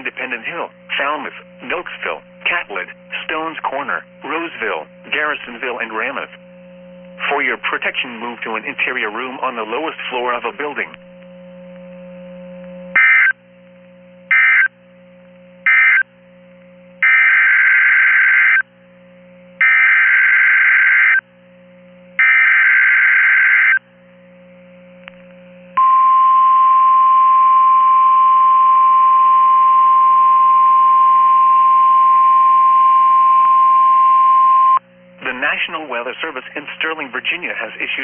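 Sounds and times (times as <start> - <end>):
single-pitched warning alarm tone: 13.0 - 13.4, 14.3 - 14.7, 15.7 - 16.0, 17.0 - 18.6, 19.6 - 21.2, 22.2 - 23.8, 25.8 - 34.8.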